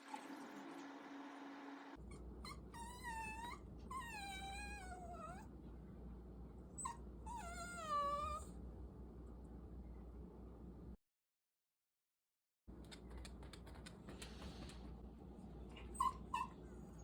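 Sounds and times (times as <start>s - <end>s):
dog whining: 2.1s - 5.5s, 6.8s - 8.5s, 15.8s - 17.0s.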